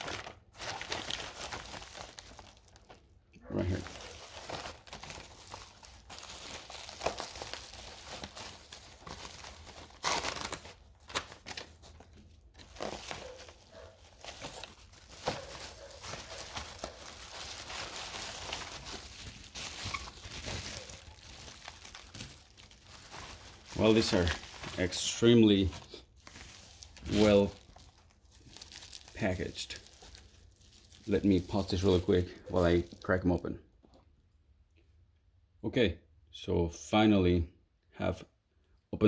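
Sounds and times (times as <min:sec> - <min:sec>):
packaging crinkling and rustling: 0:00.0 - 0:34.0.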